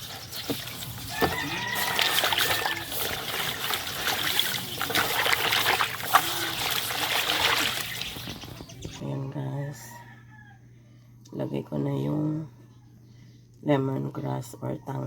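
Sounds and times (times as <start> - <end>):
water running and splashing: 0.0 - 8.7.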